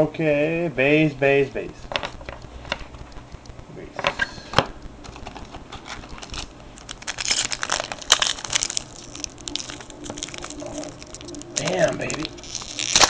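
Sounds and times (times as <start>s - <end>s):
wrapper crinkling and tearing: 4.6s - 13.0s.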